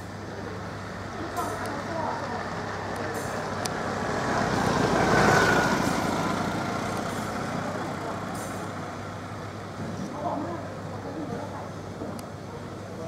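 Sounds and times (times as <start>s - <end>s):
vehicle passing by rushing: 2.4s - 8.4s.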